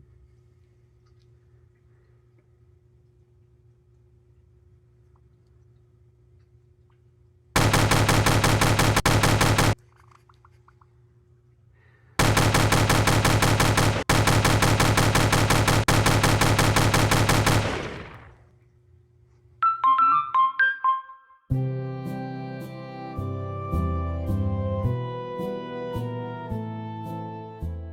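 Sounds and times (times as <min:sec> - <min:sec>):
machine-gun fire bursts: 0:07.6 - 0:09.8, 0:12.2 - 0:18.4
music: 0:19.6 - 0:27.9.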